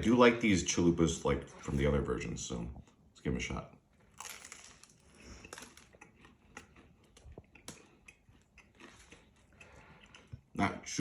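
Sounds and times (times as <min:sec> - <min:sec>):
crunching and chewing food: 0:01.4 - 0:11.0.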